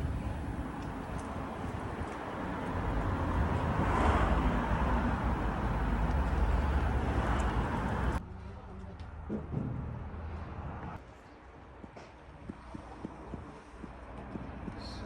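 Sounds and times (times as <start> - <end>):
motor vehicle rumbling: 0.0 - 11.0.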